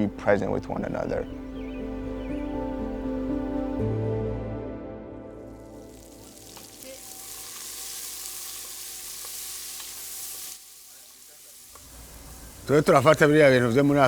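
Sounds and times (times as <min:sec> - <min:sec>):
soft music: 0:00.0 - 0:08.7
sizzling hiss: 0:05.7 - 0:14.0.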